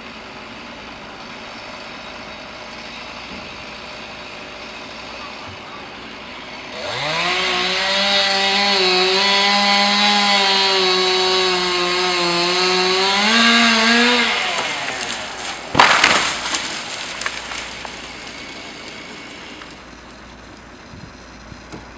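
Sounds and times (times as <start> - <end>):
chainsaw running: 0.0 - 21.9
loud crash with crackling: 13.8 - 20.4.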